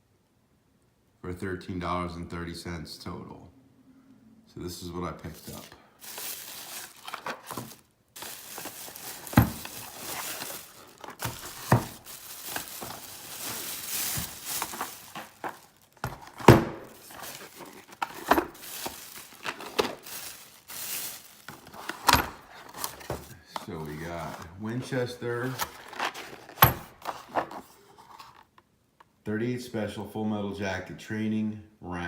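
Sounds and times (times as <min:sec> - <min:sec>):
cardboard packaging crinkling: 0:05.2 - 0:24.6, 0:25.2 - 0:28.5.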